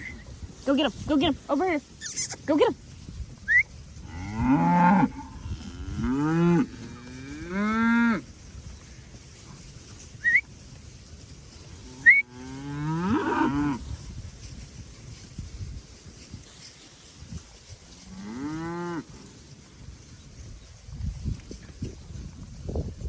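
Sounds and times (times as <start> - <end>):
cattle mooing: 3.5 - 8.2, 11.9 - 13.8.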